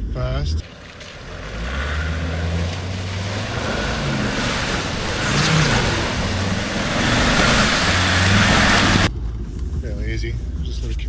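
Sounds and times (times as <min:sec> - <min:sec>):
water and mud splashing: 0:00.6 - 0:09.1
engine under throttle: 0:00.6 - 0:09.3.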